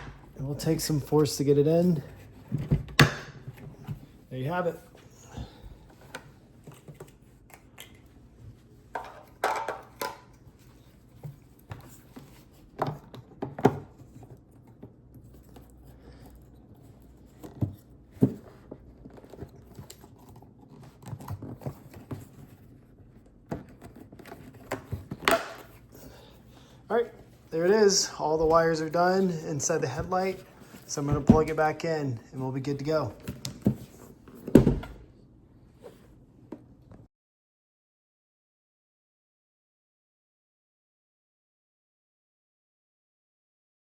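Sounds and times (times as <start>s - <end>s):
clicks and knocks of plastic parts: 8.9s - 10.4s.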